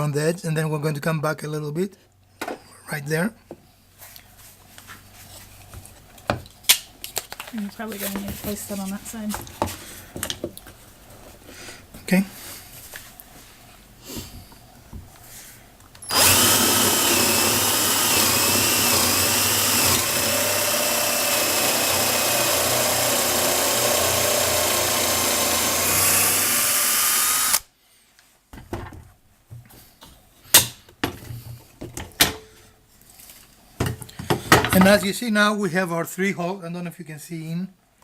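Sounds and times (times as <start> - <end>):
power drill boring into wood: 16.0 - 27.7.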